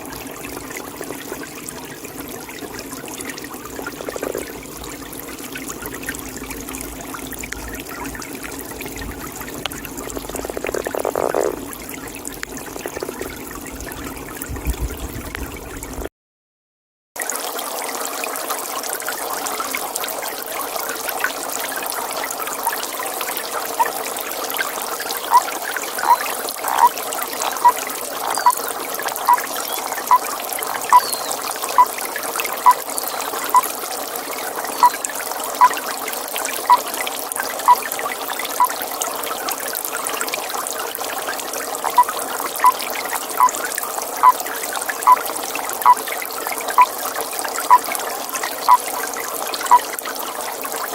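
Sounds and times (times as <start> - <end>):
trickling pond water: 0.0 - 16.1, 17.2 - 50.9
toad calling: 3.9 - 4.6, 9.6 - 11.7, 12.4 - 13.3, 25.1 - 31.9, 32.6 - 33.7, 34.8 - 35.0, 37.7 - 37.9, 41.8 - 43.6, 44.2 - 44.4, 45.0 - 45.2, 48.7 - 48.9.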